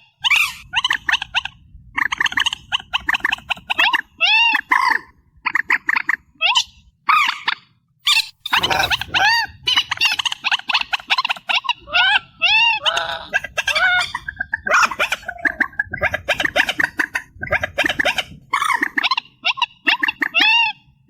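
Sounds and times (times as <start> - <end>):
rails calling: 8.1 - 9.8
low rumble: 8.3 - 9.9.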